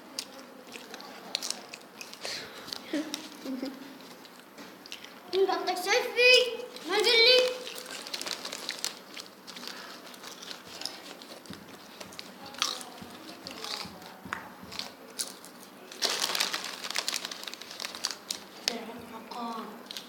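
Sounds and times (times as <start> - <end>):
crisps crunching: 0.1 - 5.2, 6.7 - 20.0
crisp packet crinkling: 6.8 - 18.9.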